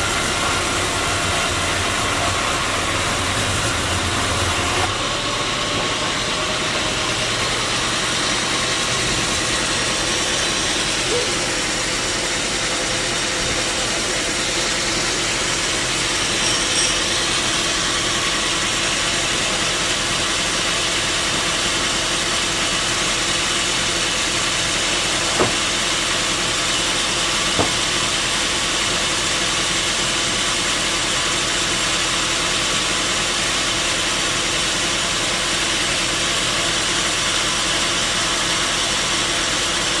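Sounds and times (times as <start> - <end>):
sawmill machinery running: 0.0 - 40.0
sharp knocks: 25.3 - 25.7, 27.5 - 28.0.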